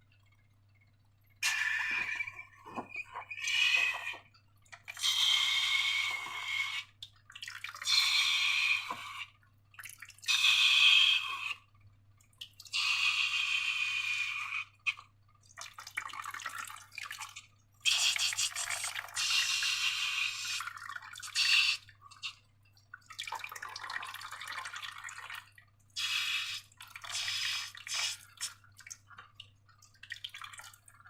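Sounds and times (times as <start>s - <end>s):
liquid dripping and spattering: 1.3s - 6.2s, 14.9s - 31.0s
liquid squeezed out in spurts: 1.4s - 4.2s, 17.9s - 20.6s.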